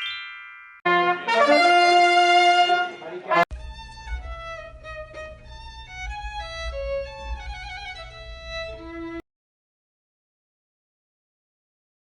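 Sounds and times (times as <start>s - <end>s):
solo instrument melody: 0.0s - 9.2s.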